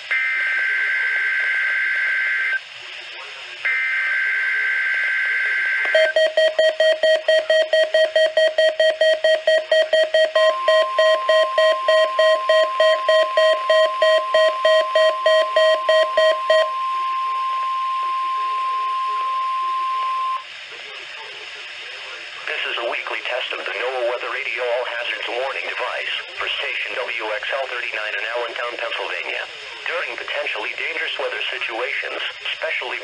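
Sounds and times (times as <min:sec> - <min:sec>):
steady warning alarm tone: 0:00.0 - 0:02.7, 0:03.7 - 0:20.5
screeching two-tone data tones: 0:03.7 - 0:20.5
rapid alert beeping: 0:05.9 - 0:16.7.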